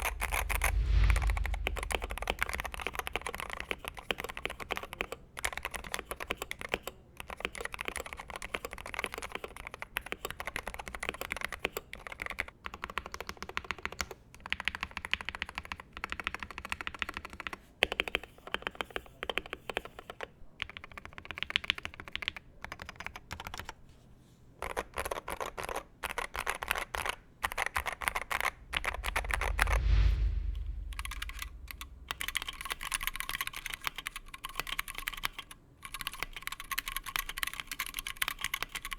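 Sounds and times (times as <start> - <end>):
low rumbling: 0.0 - 4.0, 28.4 - 33.3.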